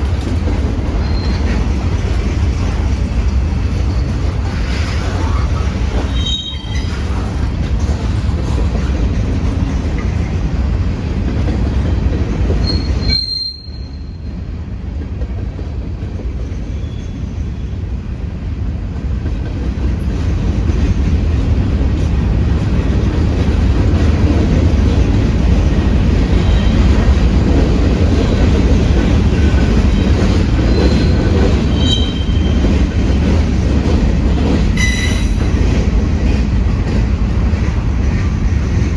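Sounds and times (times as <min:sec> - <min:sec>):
freight train rumbling past: 0:00.0 - 0:38.9
train wheel squeals: 0:00.2 - 0:02.2, 0:03.8 - 0:08.1, 0:12.6 - 0:14.4, 0:16.4 - 0:17.8, 0:26.3 - 0:27.2, 0:28.2 - 0:33.6, 0:34.7 - 0:35.8.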